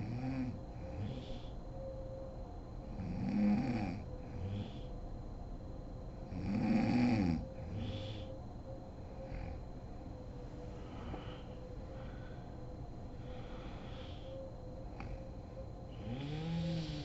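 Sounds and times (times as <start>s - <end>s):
woman snoring: 0.0s - 1.5s, 3.0s - 4.9s, 6.3s - 8.3s, 15.9s - 17.0s
soft breath: 7.6s - 8.4s, 10.4s - 17.0s.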